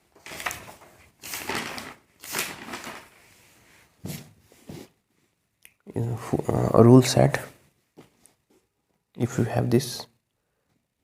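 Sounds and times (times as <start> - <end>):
paper rustling: 0.0 - 4.9.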